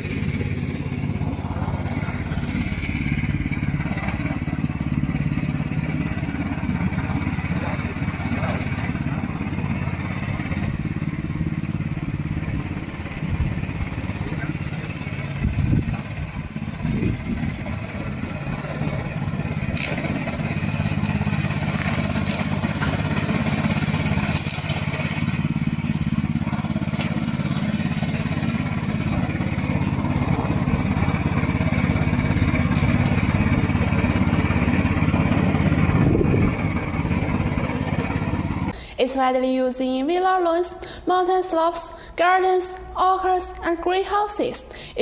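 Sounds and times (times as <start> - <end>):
mower engine running: 0.0 - 38.9.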